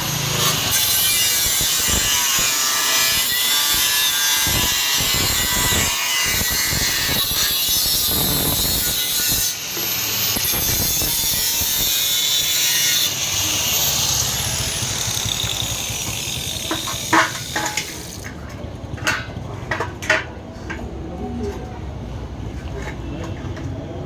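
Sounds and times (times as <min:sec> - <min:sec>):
power tool cutting: 0:00.0 - 0:18.2.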